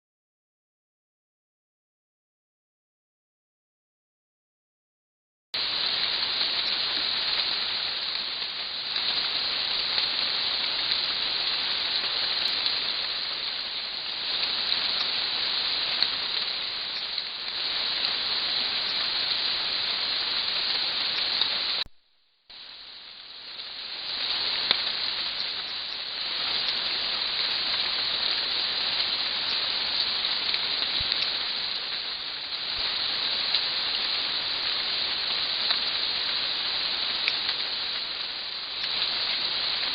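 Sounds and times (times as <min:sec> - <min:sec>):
rain hiss: 0:05.6 - 0:39.9
raindrop ticks: 0:05.6 - 0:39.9.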